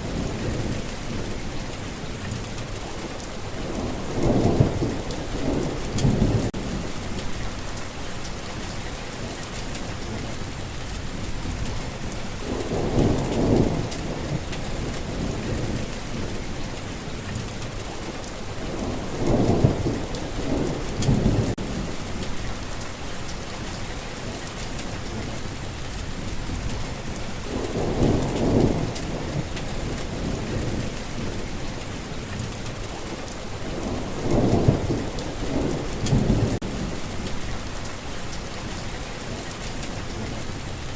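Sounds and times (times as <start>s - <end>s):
thunder rumbles: 0.0s - 40.8s
rain falling: 0.0s - 40.9s.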